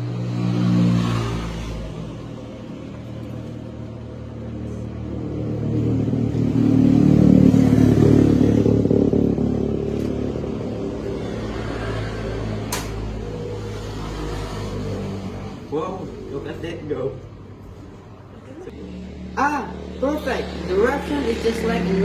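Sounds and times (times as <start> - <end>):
vehicle engine running: 2.4 - 12.6.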